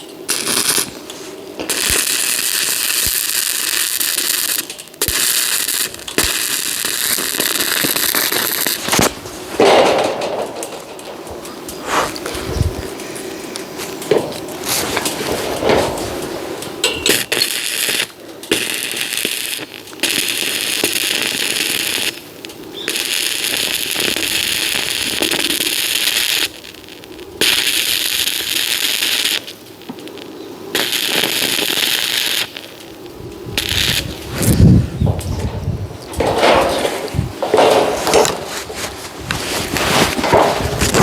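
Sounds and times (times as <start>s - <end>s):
electric arc welding crackling: 0.0s - 41.0s.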